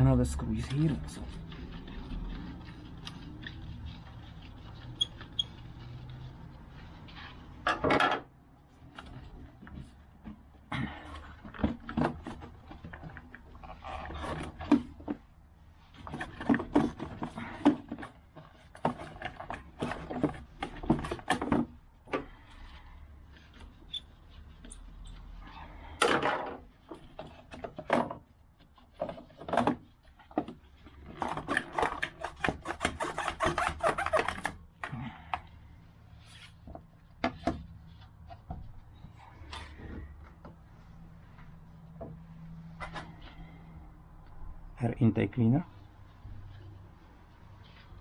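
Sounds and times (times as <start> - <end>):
plastic parts scraping: 8.9 - 38.5.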